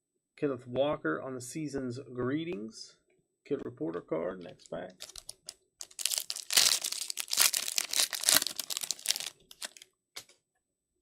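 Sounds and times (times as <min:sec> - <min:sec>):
wrapper crinkling and tearing: 0:05.0 - 0:09.8.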